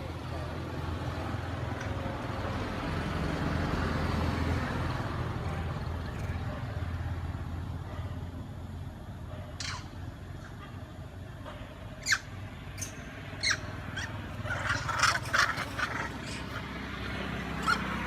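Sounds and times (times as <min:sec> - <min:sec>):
vehicle engine passing: 0:00.0 - 0:07.8, 0:12.3 - 0:18.0.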